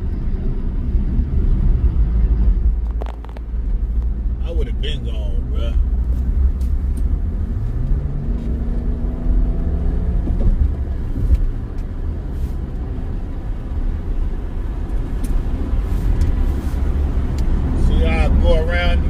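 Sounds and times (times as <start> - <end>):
car engine: 0.0 - 19.0
road rumble: 0.0 - 19.0.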